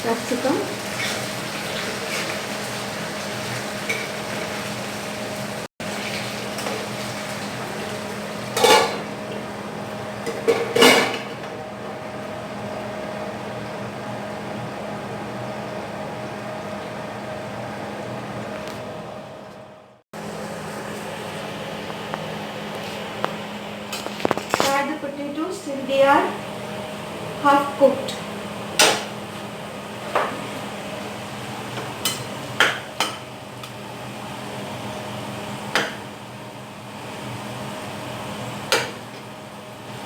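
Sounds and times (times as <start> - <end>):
potatoes sizzling in a pan: 0.0 - 8.6
continuous hum: 18.4 - 40.0.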